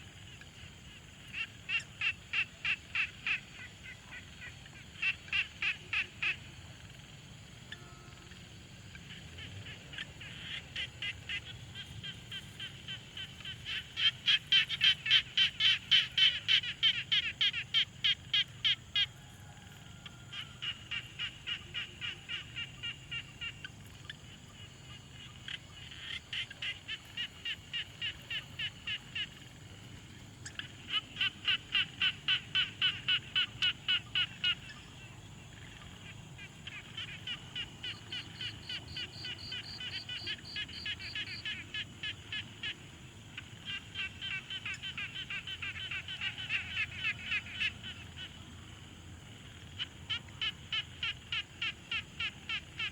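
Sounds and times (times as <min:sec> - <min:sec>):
frogs calling in pulses: 0:00.0 - 0:52.9.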